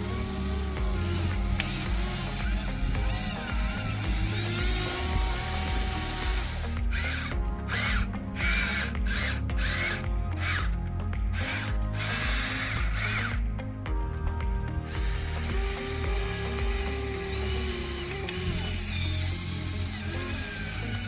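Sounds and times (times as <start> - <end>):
toy excavator motors whirring: 0.0 - 13.7, 14.8 - 21.0
background music: 0.0 - 21.0.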